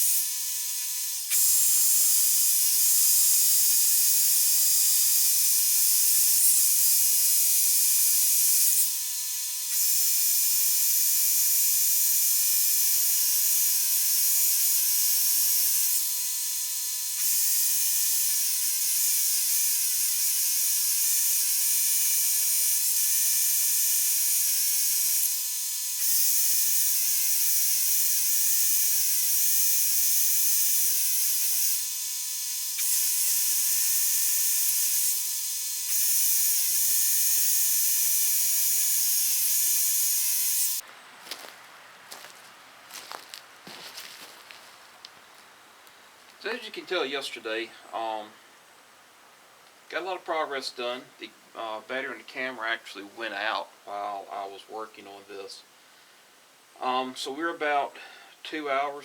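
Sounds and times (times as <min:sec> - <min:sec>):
power tool motor whining: 0:00.0 - 0:40.9.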